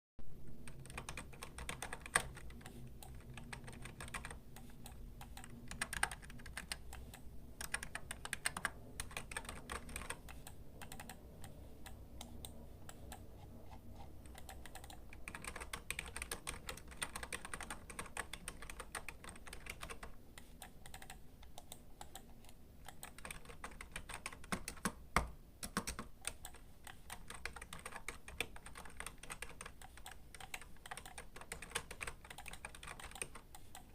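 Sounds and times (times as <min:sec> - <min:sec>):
typing on computer keyboard: 0:00.6 - 0:13.3, 0:14.2 - 0:33.9.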